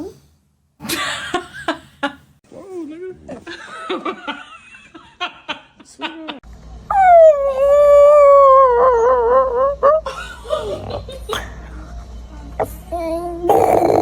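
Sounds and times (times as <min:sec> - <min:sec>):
dog howling: 0:06.9 - 0:10.0.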